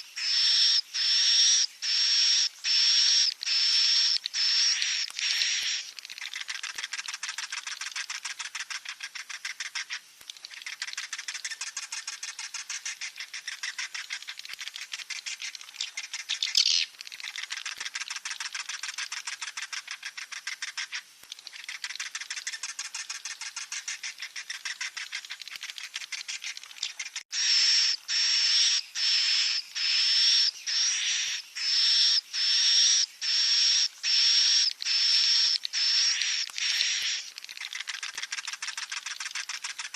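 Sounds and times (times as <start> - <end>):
bird chicks rasping rattles: 2.6 - 29.9, 34.0 - 39.9.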